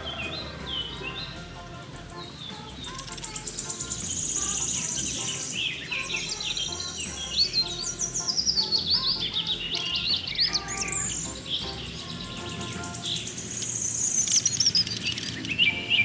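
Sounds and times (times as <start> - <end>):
birds chirping and trilling: 0.0 - 16.0.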